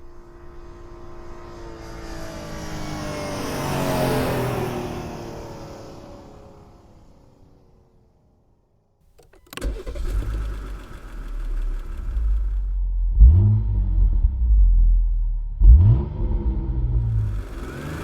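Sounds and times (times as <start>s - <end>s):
car engine starting and revving: 9.2s - 18.0s.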